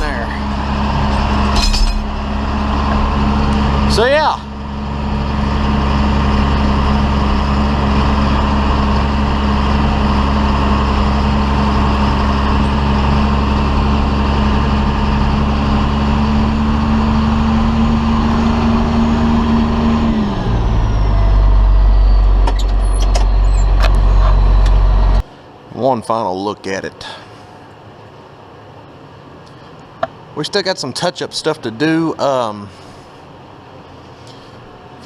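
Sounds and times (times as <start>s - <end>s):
tractor diesel engine running: 0.0s - 25.6s.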